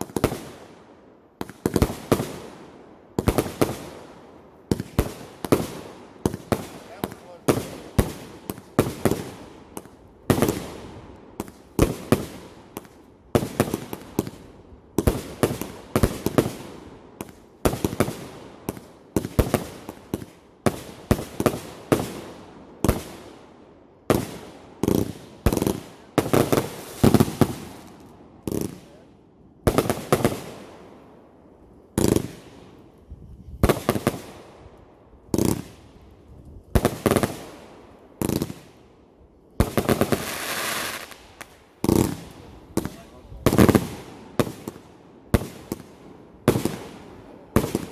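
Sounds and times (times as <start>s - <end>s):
fireworks bangs: 4.7s - 14.4s, 24.1s - 31.0s, 31.9s - 34.6s, 35.2s - 38.8s, 39.6s - 47.9s.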